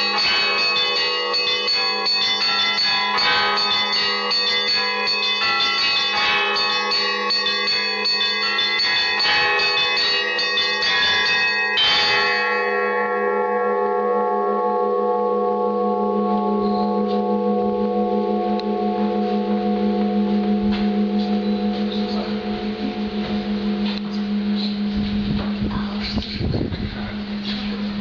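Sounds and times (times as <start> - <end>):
church bells ringing: 0.0 - 28.0
deep bell tones humming: 0.0 - 28.0.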